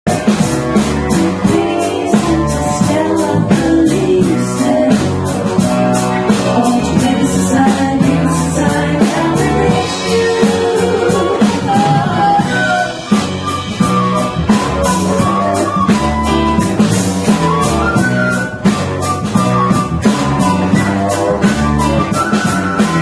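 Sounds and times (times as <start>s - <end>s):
band playing soft rock: 0.1s - 23.0s.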